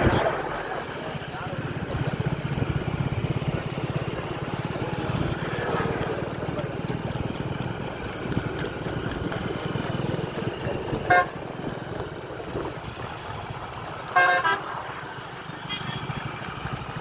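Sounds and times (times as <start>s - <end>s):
vehicle engines rumbling: 0.0s - 17.0s
vehicle horn toots: 11.0s - 11.6s, 14.1s - 14.7s.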